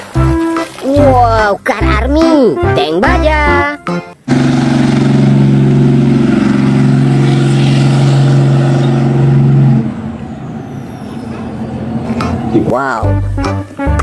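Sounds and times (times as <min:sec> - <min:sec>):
heavy vehicle engine drone: 0:04.1 - 0:14.0.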